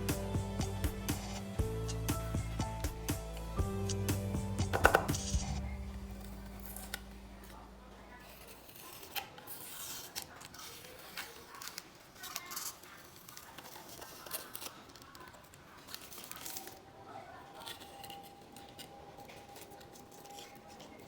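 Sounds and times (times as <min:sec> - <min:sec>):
background music: 0:00.0 - 0:07.5.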